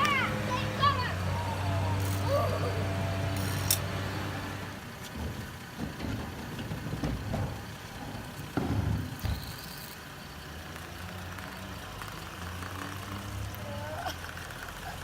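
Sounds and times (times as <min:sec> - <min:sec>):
car engine running: 0:00.0 - 0:15.0
engine rumbling with a crack: 0:00.0 - 0:15.0.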